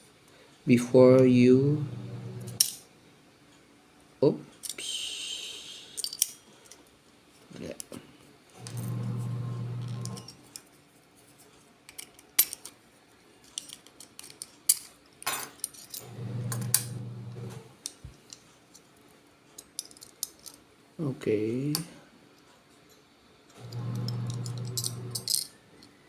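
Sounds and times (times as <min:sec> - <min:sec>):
low hum: 0:01.7 - 0:02.6.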